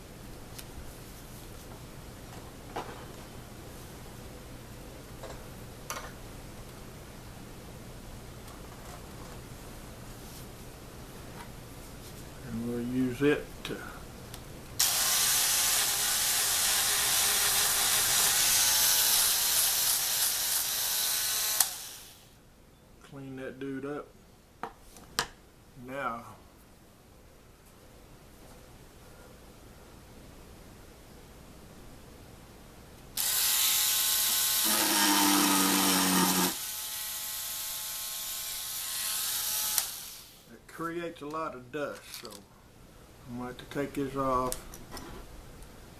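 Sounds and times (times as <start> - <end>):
rotary tool high whine: 14.8 - 22.3, 33.2 - 40.5
rotary tool sanding wire brush: 33.2 - 40.2.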